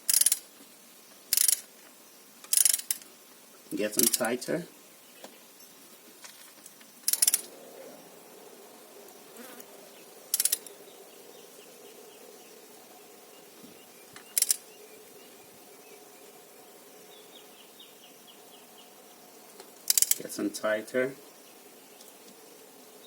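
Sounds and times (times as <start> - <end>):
faint steady hum: 0.0 - 23.0
torque wrench ratchet clicking: 0.1 - 0.4, 1.3 - 1.7, 2.5 - 3.0, 4.0 - 4.3, 7.1 - 7.5, 10.3 - 10.6, 19.9 - 20.2.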